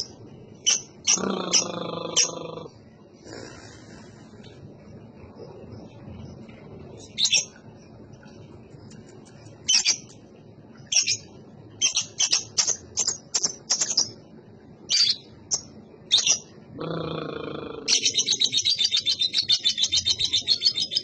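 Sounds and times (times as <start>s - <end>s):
lovebird chirping: 0.0s - 2.7s, 7.0s - 7.6s, 8.8s - 10.2s, 10.9s - 14.2s, 14.9s - 21.0s.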